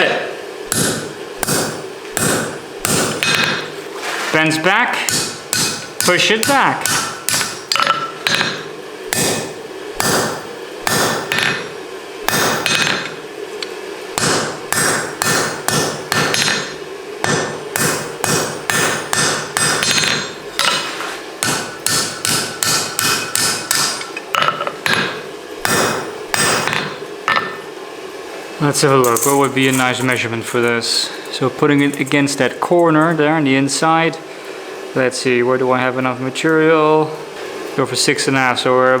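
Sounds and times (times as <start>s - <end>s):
hammer striking hot steel on anvil: 0.7s - 3.8s, 5.0s - 27.7s.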